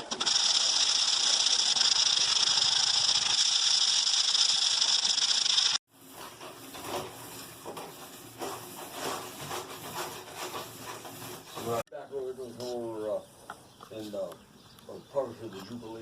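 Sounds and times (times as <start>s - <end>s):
rustling: 6.0s - 11.8s.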